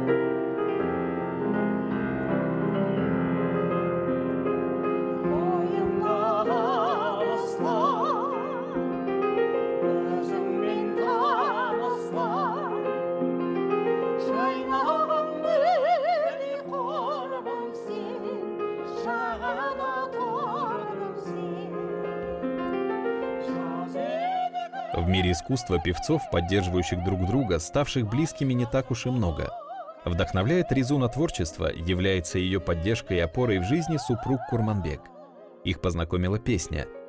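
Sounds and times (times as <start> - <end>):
high voice singing operatically: 5.3 - 8.7, 9.9 - 12.8, 14.3 - 21.9, 23.5 - 35.3.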